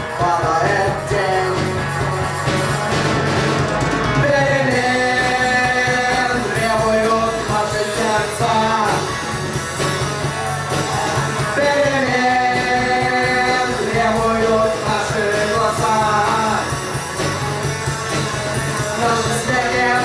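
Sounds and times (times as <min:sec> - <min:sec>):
person singing: 0:00.0 - 0:02.0, 0:04.1 - 0:09.2, 0:10.3 - 0:16.8, 0:18.8 - 0:20.0
rock band playing: 0:00.0 - 0:20.0.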